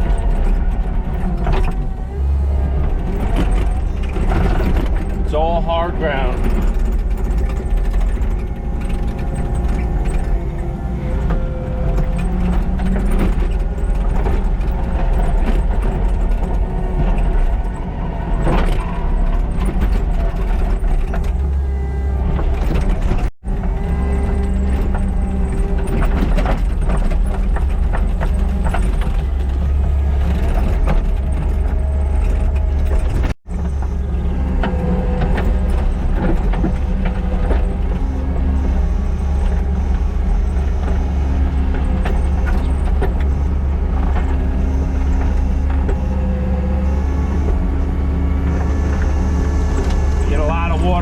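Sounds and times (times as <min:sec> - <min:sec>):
track loader diesel engine: 0:00.0 - 0:51.0.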